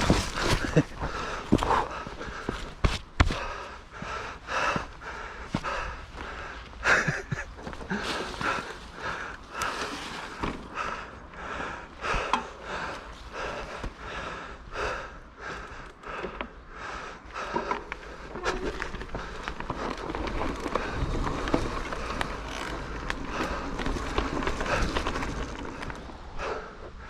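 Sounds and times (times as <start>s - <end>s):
person panting hard: 0.0s - 18.4s, 26.3s - 27.0s
steady rumbling noise: 0.0s - 27.0s.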